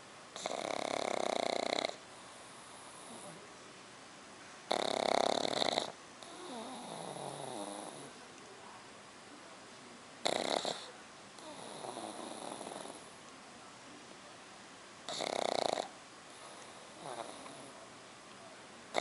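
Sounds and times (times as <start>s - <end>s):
dog snoring: 0.3s - 3.4s, 4.7s - 8.2s, 10.2s - 13.1s, 15.1s - 17.8s.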